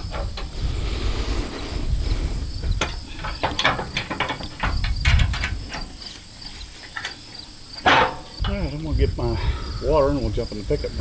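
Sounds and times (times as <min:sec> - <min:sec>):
wind rumbling on microphone: 0:00.0 - 0:06.1, 0:08.2 - 0:11.0
clicks and rustles: 0:02.6 - 0:08.6.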